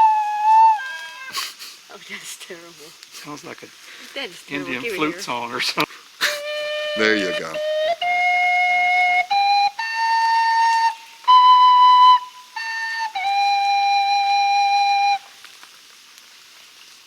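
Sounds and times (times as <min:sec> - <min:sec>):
flute long held notes: 0:00.0 - 0:01.4, 0:06.2 - 0:15.3.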